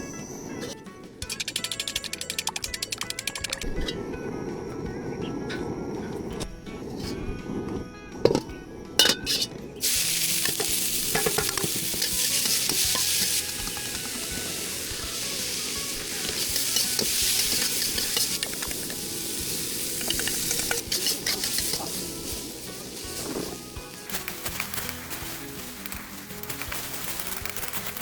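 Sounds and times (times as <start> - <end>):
food sizzling in a hot pan: 9.8 - 24.1.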